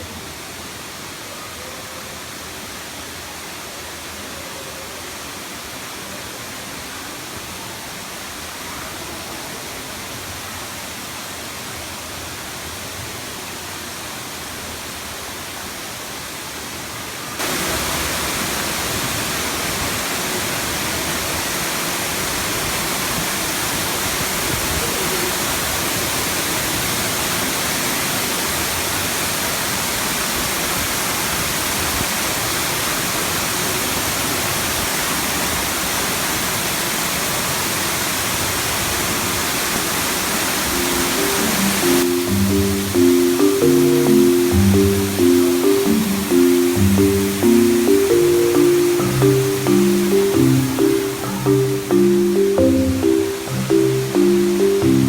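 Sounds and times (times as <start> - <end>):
waterfall rushing: 17.4 - 24.5, 39.9 - 55.0.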